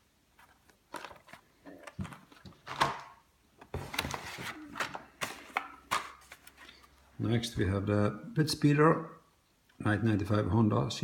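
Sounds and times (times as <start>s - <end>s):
cardboard and plastic packaging handled: 0.0s - 7.0s.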